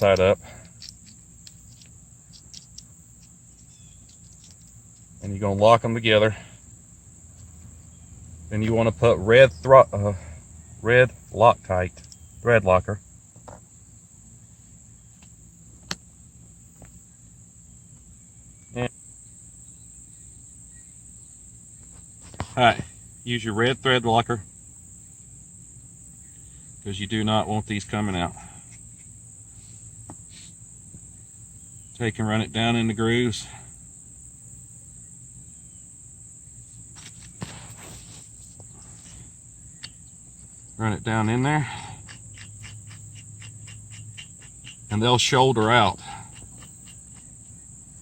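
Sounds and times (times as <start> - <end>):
small clicks: 0.0 - 5.1
crickets trilling: 0.0 - 48.0.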